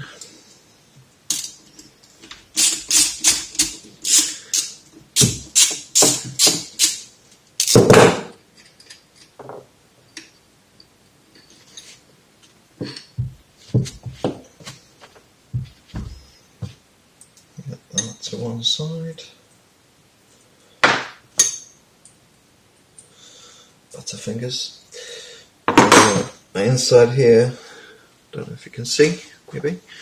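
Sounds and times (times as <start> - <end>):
metal tools clinking on workbench: 21.4 - 21.8, 25.8 - 26.4.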